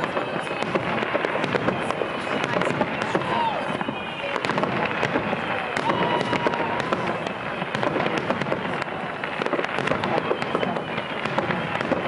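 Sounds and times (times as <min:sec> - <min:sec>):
fireworks crackling and popping: 0:00.0 - 0:12.0.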